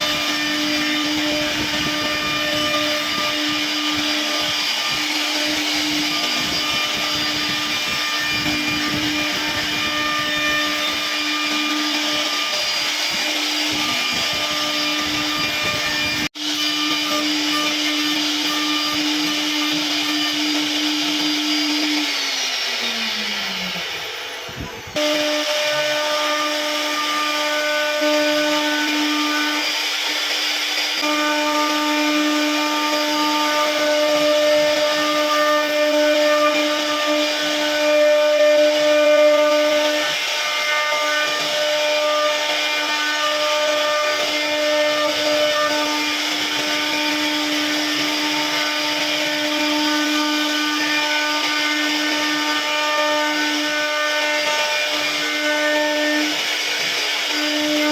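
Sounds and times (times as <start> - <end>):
router spindle high whine: 0.0 - 57.9.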